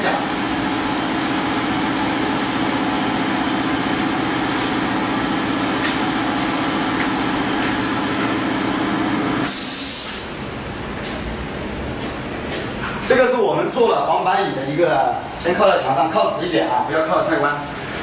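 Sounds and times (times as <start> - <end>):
burst of hiss: 9.4 - 10.4.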